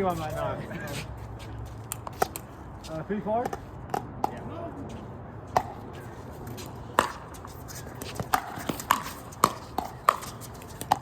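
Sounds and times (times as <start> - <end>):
paddles hitting plastic ball: 7.8 - 11.0.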